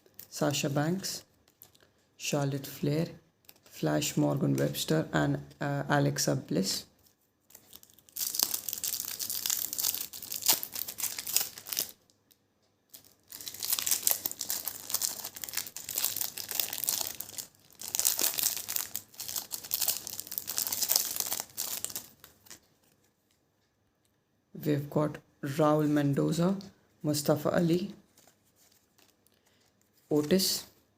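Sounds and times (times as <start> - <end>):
plastic wrapper tearing and crinkling: 1.2 - 1.9, 3.4 - 4.9, 7.4 - 23.1, 28.1 - 30.3.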